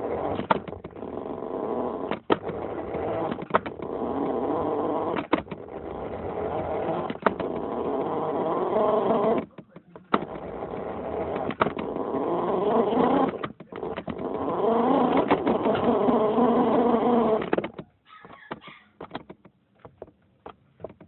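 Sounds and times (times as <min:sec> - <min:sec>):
toy car motor whining: 0:00.0 - 0:19.0
sharp clicks and knocks: 0:00.0 - 0:21.0.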